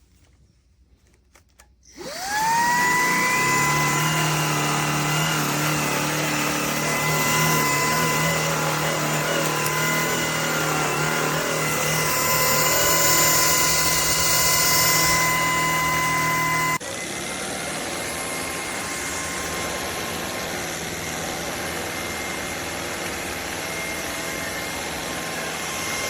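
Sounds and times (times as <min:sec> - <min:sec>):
stick vacuum running: 0:01.9 - 0:26.0.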